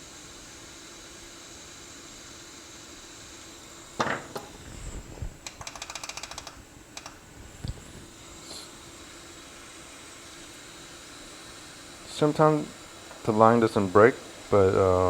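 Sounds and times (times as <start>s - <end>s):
steady background hiss: 0.0s - 15.0s
small tools clicking and tapping: 5.4s - 7.2s.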